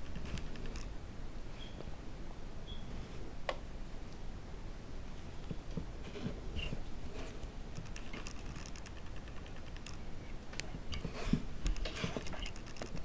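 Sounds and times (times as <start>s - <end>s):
faint clicks: 7.7s - 10.7s.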